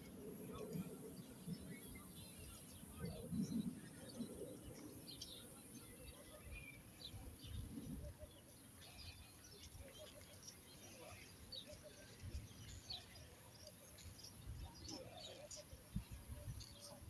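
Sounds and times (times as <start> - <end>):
wind rumble on microphone: 0.0 - 5.6, 6.4 - 8.5, 14.3 - 17.0.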